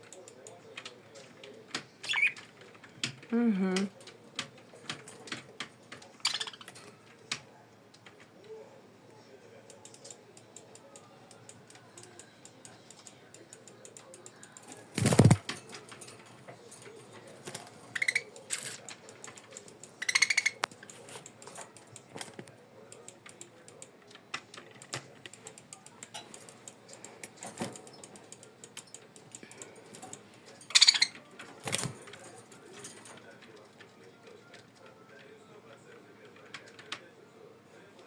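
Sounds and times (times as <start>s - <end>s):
budgerigar chirping: 2.1s - 2.4s, 6.2s - 6.7s, 20.0s - 20.6s, 30.8s - 31.1s
light clicks and taps: 9.6s - 17.7s, 18.3s - 30.6s.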